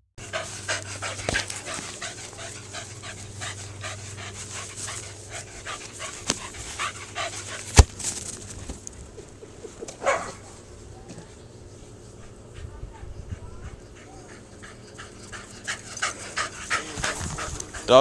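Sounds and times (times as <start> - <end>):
dog panting: 0.2 - 7.8, 12.4 - 18.0.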